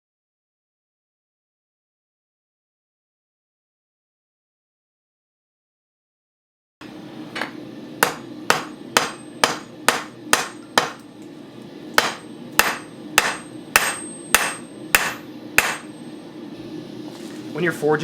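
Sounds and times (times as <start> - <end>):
hammer striking steel on anvil: 7.4 - 11.0, 12.0 - 16.0.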